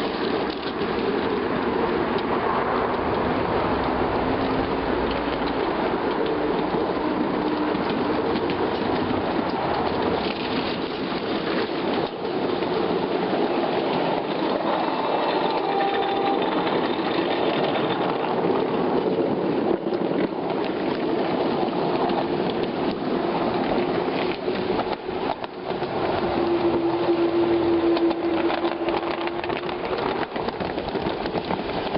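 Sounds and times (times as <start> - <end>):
model train running on rails: 0.0 - 31.9
faint whining tones: 25.0 - 30.9.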